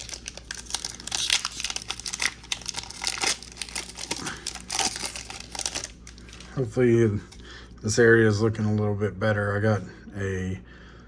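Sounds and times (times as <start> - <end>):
foil wrapper crinkling and tearing: 0.0 - 7.4.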